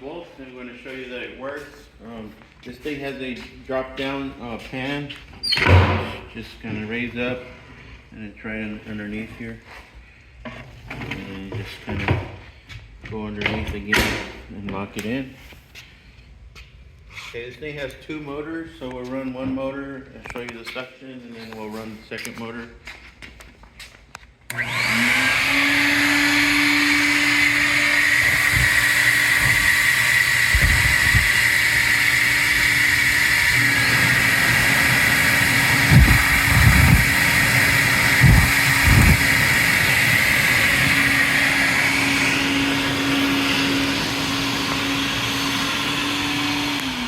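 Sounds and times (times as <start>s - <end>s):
dust vacuum whining: 24.5s - 47.0s.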